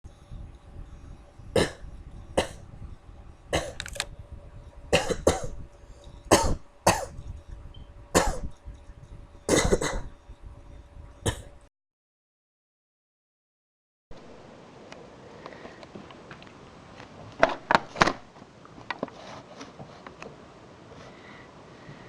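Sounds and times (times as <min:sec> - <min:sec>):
person coughing: 0:01.6 - 0:01.8, 0:02.4 - 0:02.6, 0:03.6 - 0:03.8, 0:05.0 - 0:05.6, 0:06.3 - 0:07.2, 0:08.2 - 0:08.5, 0:09.5 - 0:10.1, 0:11.3 - 0:11.6.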